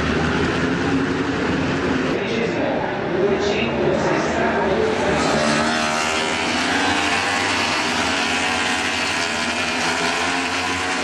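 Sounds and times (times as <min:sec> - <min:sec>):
motorcycle engine at high revs: 0:04.8 - 0:11.0.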